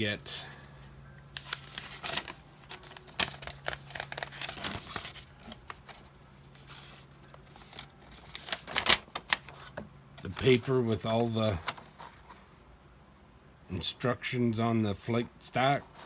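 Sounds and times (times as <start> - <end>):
paper crinkling and rustling: 0.6 - 12.4.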